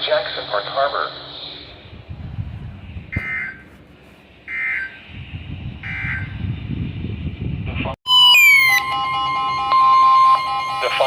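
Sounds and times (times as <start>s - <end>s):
loud steady tone: 3.1s - 3.7s, 4.4s - 6.6s, 8.1s - 11.0s.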